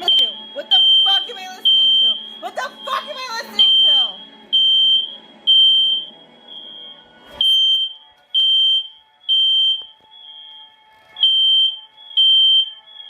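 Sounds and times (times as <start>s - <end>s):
fire alarm beeping: 0.0s - 13.0s.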